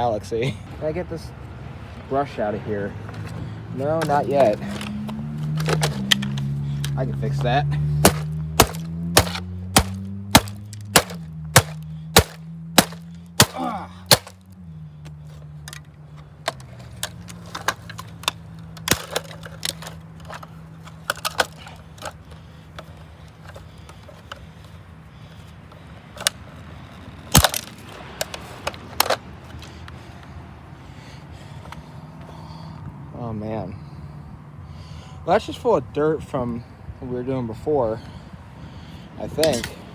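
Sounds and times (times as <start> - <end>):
sledgehammer smashing plastic: 5.6 - 6.3, 8.0 - 14.4, 18.8 - 19.9, 27.3 - 27.7
plastic cracking and breaking: 5.6 - 6.4, 8.0 - 14.4, 16.5 - 20.4, 21.0 - 22.2, 27.2 - 29.2.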